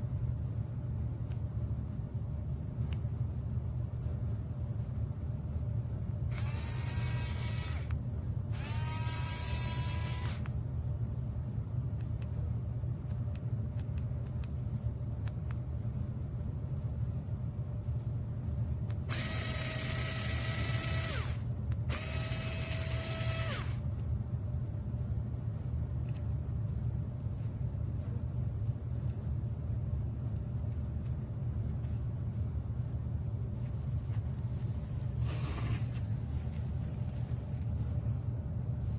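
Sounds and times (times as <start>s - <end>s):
electric drill pen whining: 6.3s - 10.5s, 19.1s - 23.8s, 35.2s - 36.0s.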